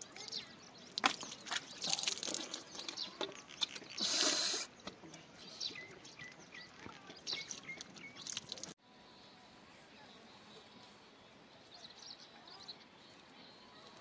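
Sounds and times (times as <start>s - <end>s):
small birds chirping: 0.0s - 14.0s
burst of hiss: 4.0s - 4.7s.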